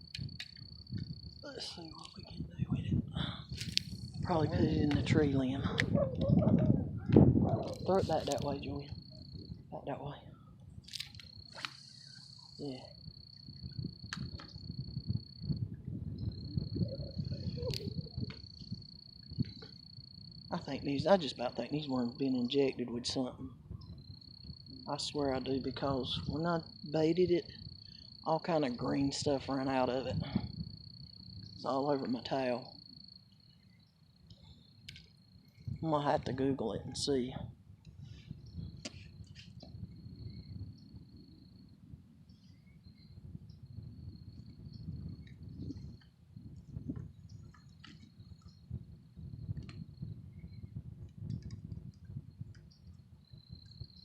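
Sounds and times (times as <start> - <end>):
low irregular rumble: 0.0 - 54.0
insect trilling: 10.8 - 22.7.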